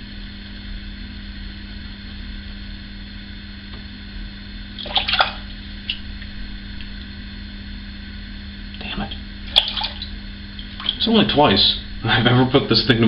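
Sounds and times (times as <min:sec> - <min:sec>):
shower water running: 0:08.9 - 0:12.3.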